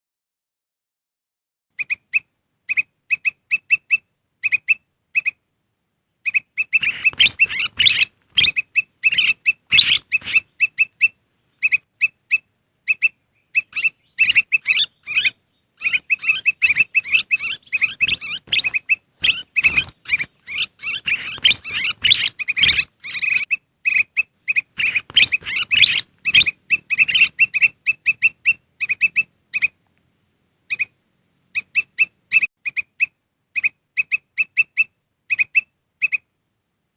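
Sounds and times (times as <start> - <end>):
birds chattering: 6.2 - 29.8
birds chirping: 6.2 - 29.8, 30.7 - 36.2.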